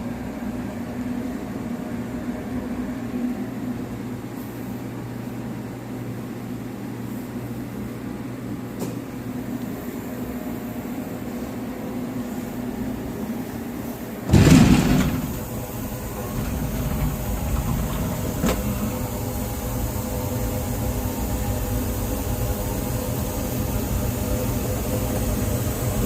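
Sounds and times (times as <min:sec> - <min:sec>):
machine hum: 0:14.2 - 0:26.0
loud rushing burst: 0:14.3 - 0:16.9.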